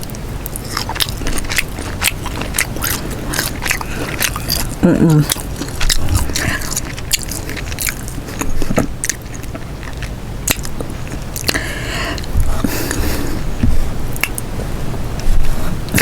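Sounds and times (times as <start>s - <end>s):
close chewing: 0.0s - 14.6s
crawfish shells crackling: 0.4s - 11.6s.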